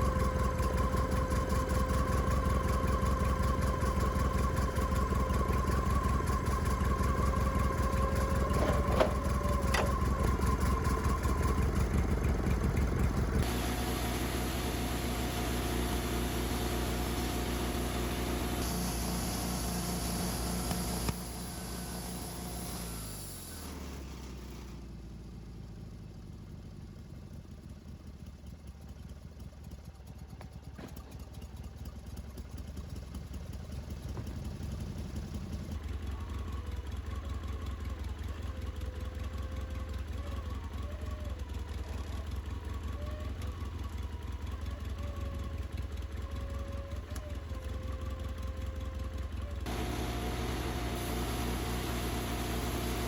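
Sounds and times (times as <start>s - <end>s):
engine running: 0.0s - 53.0s.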